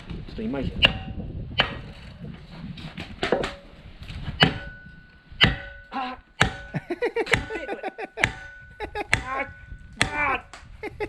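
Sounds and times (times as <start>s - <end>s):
chopping on wood: 6.4s - 7.6s, 8.2s - 8.5s.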